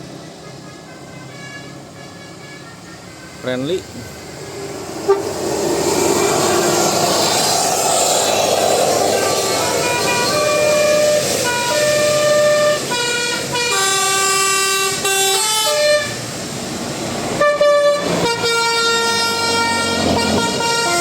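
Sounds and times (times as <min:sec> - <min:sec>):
musical air horn tune: 0:00.4 - 0:03.7, 0:05.1 - 0:05.4, 0:09.2 - 0:16.2, 0:17.4 - 0:21.0.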